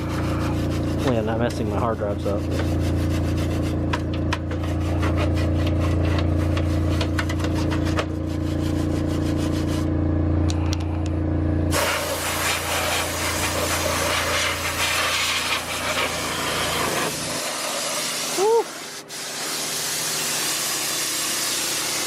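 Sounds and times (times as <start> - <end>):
air compressor motor humming: 0.0 - 22.0
blow gun air hissing: 11.7 - 22.0.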